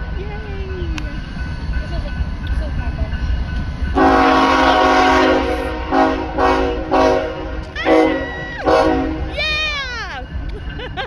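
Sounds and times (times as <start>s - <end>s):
locomotive air horn: 4.0s - 9.4s.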